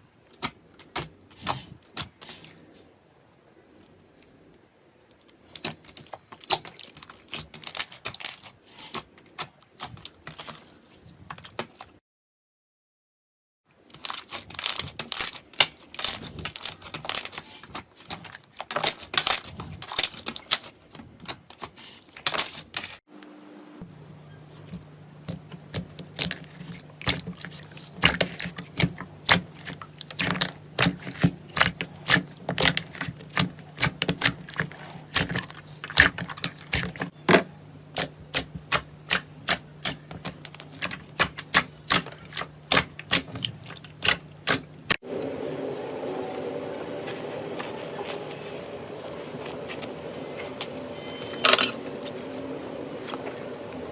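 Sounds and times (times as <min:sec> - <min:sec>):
faint low hum: 0:23.2 - 0:53.9.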